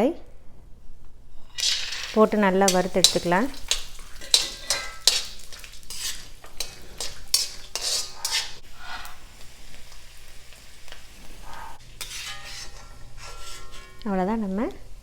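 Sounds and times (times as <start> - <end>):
spoon scraping a pan: 1.3 - 9.4, 10.9 - 14.1
peanuts sizzling in hot oil: 1.5 - 15.0.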